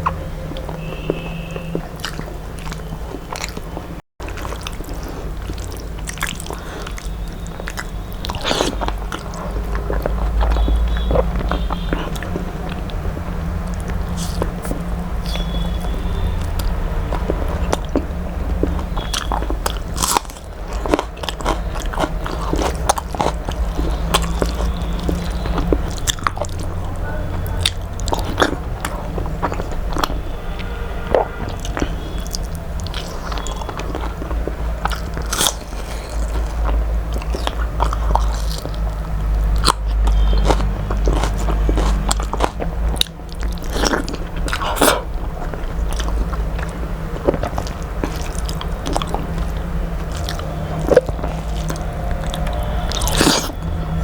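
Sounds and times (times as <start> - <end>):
person chewing and crunching: 0.0 - 54.0
steady low hum: 0.0 - 54.0.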